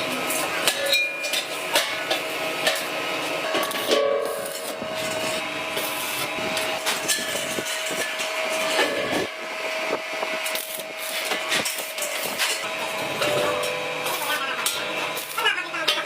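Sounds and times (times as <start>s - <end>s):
steady machine hum: 0.0s - 16.0s
metal scraping: 0.9s - 9.3s.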